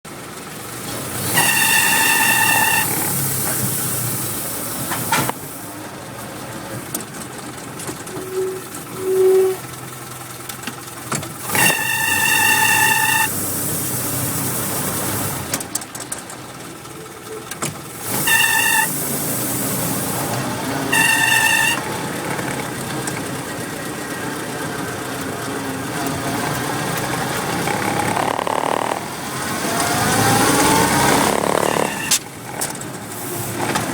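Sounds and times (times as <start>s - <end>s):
engine running steadily: 0.1s - 33.9s
high clutch squeal: 1.1s - 5.3s, 8.0s - 10.2s, 11.4s - 15.5s, 17.2s - 33.9s.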